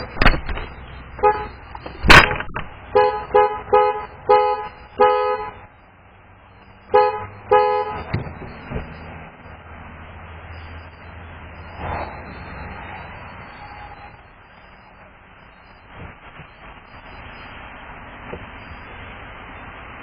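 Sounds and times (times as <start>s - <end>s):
car horn two-note toots: 1.2s - 1.6s, 2.2s - 5.6s, 6.9s - 8.1s
sharp bang: 1.3s - 2.7s.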